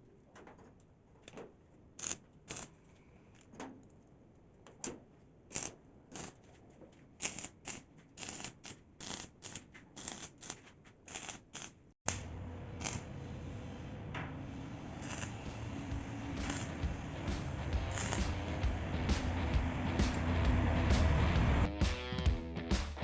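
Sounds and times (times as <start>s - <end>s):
clicks and scrapes of handwork: 0.5s - 4.0s, 4.6s - 12.2s
low hum: 12.1s - 21.8s.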